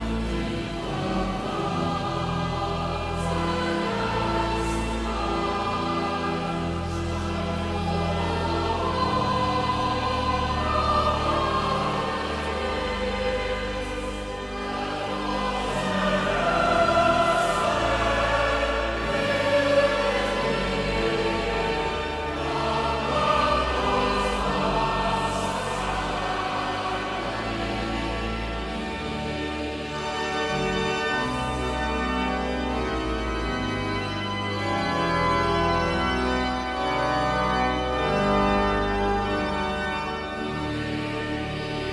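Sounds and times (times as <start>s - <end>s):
organ chords: 0.0s - 41.9s
choir singing held notes: 0.3s - 29.0s.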